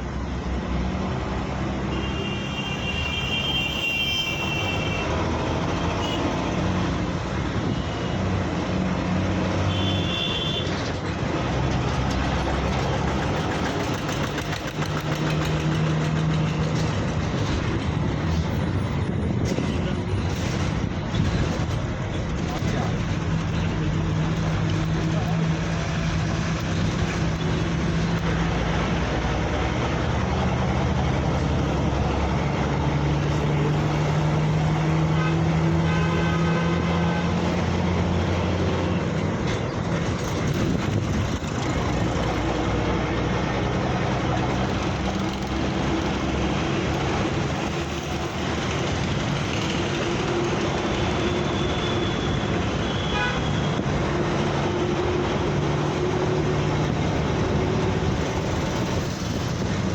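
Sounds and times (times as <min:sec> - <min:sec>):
passing vehicles: 0:00.0 - 0:59.9
car horn: 0:01.9 - 0:05.2, 0:09.6 - 0:10.7, 0:35.2 - 0:37.4, 0:51.5 - 0:53.8
high horn tone: 0:52.8 - 0:53.7.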